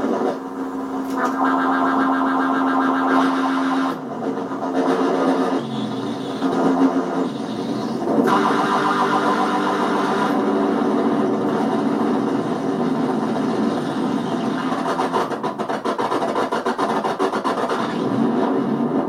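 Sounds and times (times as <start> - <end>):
synth playing held tones with echo: 1.2 - 4.0, 5.5 - 10.7.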